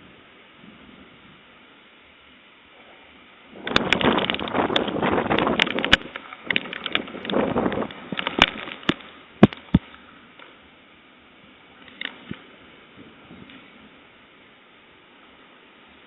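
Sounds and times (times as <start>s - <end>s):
high winds: 0.0s - 16.0s
tree cracking and splintering: 3.6s - 10.5s.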